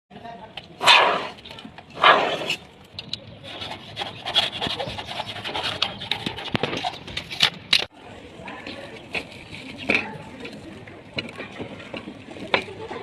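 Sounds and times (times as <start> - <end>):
scraping on a hard surface: 0.8 - 2.6, 3.4 - 7.6.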